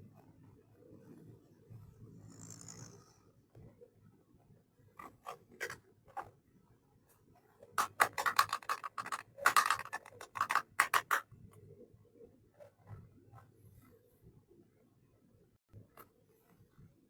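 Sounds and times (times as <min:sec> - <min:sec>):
packaging rustling and clacking: 0:07.8 - 0:11.2
plastic toy pieces clicking: 0:07.8 - 0:11.2.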